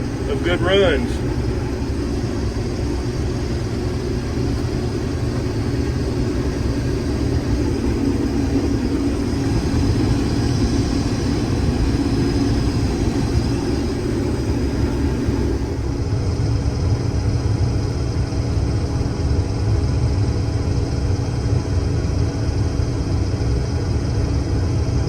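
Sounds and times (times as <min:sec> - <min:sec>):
combine harvester droning: 0:00.0 - 0:18.8.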